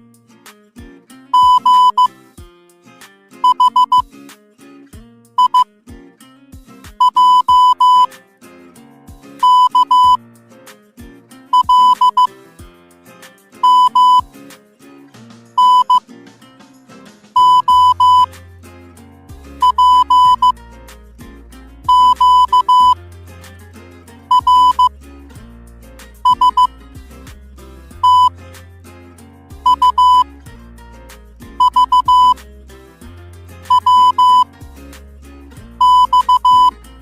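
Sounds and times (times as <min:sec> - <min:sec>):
background music: 0:00.0 - 0:37.0
morse code beeps: 0:01.4 - 0:02.1, 0:03.4 - 0:04.0, 0:05.4 - 0:05.7, 0:07.0 - 0:08.1, 0:09.4 - 0:10.2, 0:11.5 - 0:12.3, 0:13.6 - 0:14.3, 0:15.6 - 0:16.0, 0:17.4 - 0:18.3, 0:19.6 - 0:20.6, 0:21.9 - 0:23.0, 0:24.3 - 0:24.9, 0:26.2 - 0:26.7, 0:28.0 - 0:28.3, 0:29.6 - 0:30.3, 0:31.6 - 0:32.4, 0:33.7 - 0:34.5, 0:35.8 - 0:36.8.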